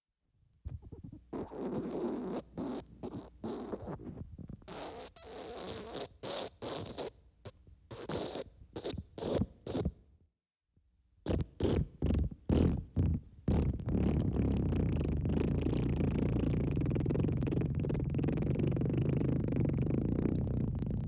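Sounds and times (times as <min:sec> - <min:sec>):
wet fart sound effect: 0:11.3 - 0:21.0.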